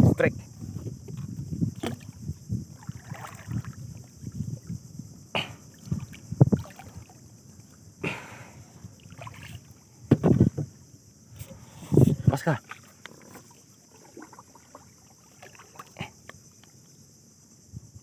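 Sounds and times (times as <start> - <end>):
water moving around boat: 0.0 - 17.2
high insect drone: 0.0 - 18.0
knocks and thumps on boat: 0.6 - 3.9, 9.2 - 10.8.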